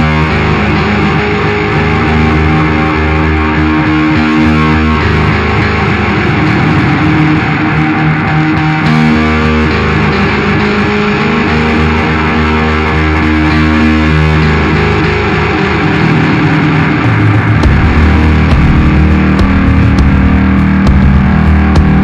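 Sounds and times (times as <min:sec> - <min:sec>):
guitar chords: 0:00.0 - 0:22.0
low bass line: 0:16.8 - 0:22.0.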